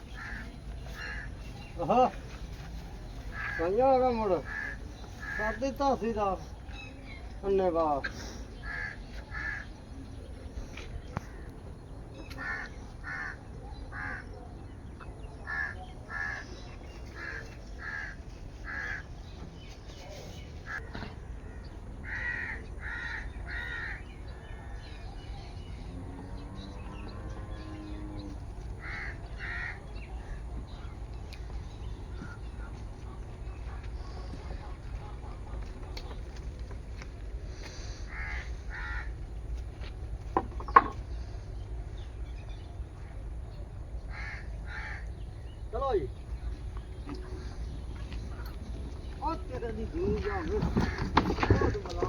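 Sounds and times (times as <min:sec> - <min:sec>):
crows cawing: 0:00.1 - 0:02.2, 0:03.3 - 0:06.4, 0:07.8 - 0:09.8, 0:12.2 - 0:14.4, 0:15.4 - 0:19.4, 0:20.7 - 0:24.9, 0:28.2 - 0:30.8, 0:37.0 - 0:39.9, 0:44.0 - 0:45.5, 0:49.9 - 0:52.0.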